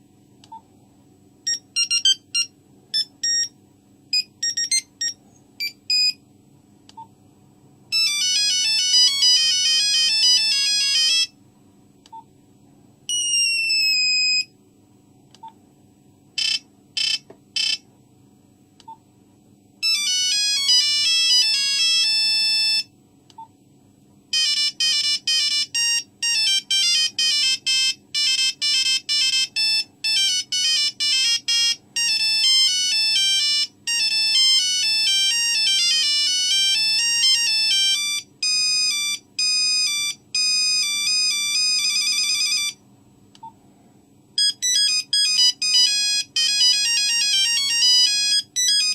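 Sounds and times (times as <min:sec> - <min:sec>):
phone ringtone beeping melodies: 0:01.5 - 0:03.6, 0:04.2 - 0:06.2, 0:07.9 - 0:11.3, 0:13.1 - 0:14.5, 0:19.8 - 0:22.9, 0:24.3 - 0:42.8, 0:44.4 - 0:48.9.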